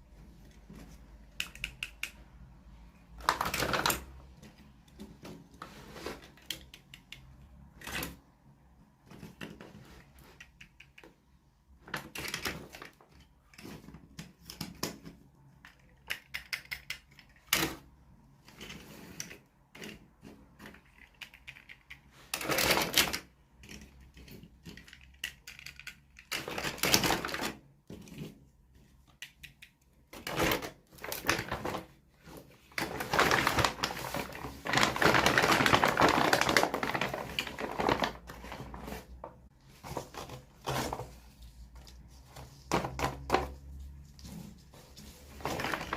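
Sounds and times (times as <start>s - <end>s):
plastic pieces clicking: 1.3s - 2.2s, 15.6s - 17.7s, 18.6s - 27.4s
packaging crinkling and rustling: 3.2s - 6.7s, 30.2s - 45.9s.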